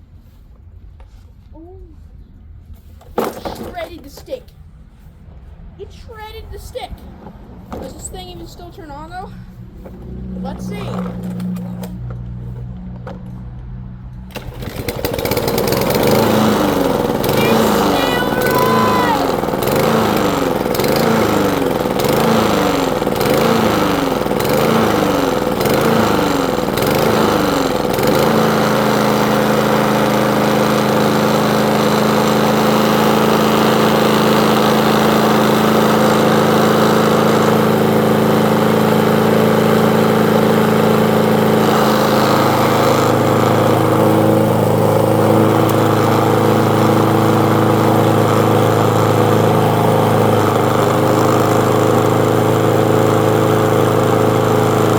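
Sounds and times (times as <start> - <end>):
lawn mower engine running: 9.4 - 54.9.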